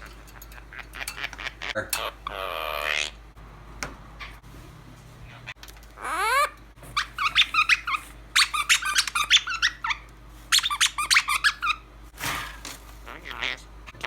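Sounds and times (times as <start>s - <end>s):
parrot chattering: 0.2s - 3.2s, 5.3s - 11.9s, 13.1s - 14.0s.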